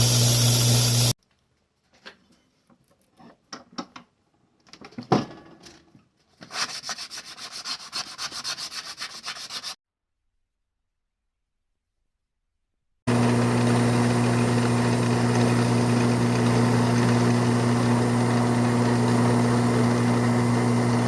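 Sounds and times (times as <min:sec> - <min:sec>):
sanding strokes on a knife: 0:06.5 - 0:09.8.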